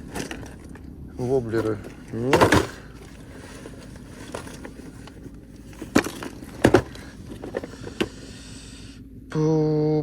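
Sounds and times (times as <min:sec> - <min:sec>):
low background noise: 0:00.0 - 0:10.0
plastic tackle boxes knocking: 0:01.6 - 0:04.8, 0:05.8 - 0:08.1.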